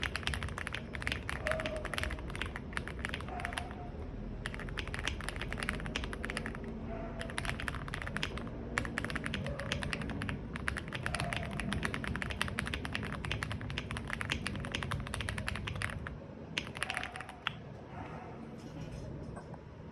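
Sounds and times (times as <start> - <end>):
mechanical keyboard typing: 0.0 - 3.8, 4.4 - 17.7.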